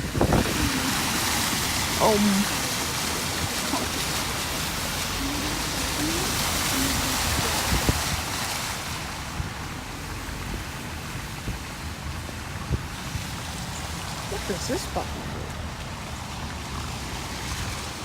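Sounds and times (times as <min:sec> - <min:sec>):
wind buffeting microphone: 0:00.0 - 0:14.4
floodwater rushing: 0:00.0 - 0:18.0.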